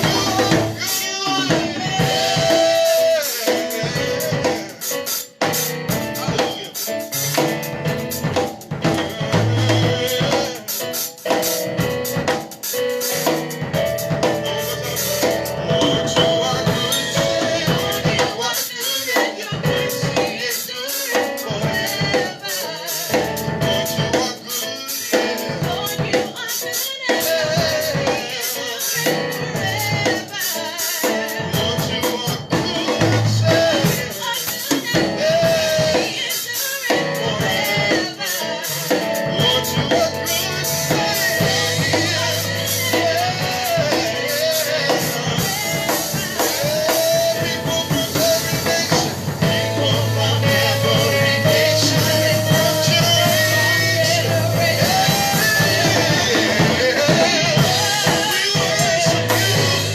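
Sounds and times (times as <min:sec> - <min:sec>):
person singing: 0:00.0 - 0:12.3, 0:13.1 - 0:59.9
drum kit: 0:00.0 - 0:59.9.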